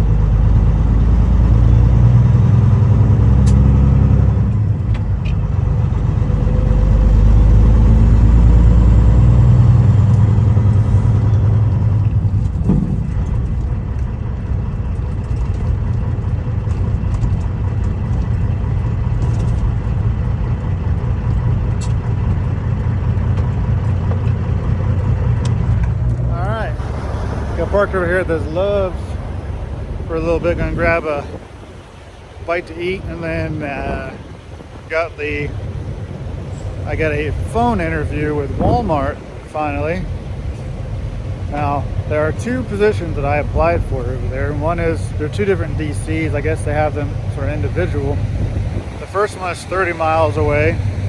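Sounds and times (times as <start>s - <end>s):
diesel truck engine rumbling: 0.0s - 51.0s.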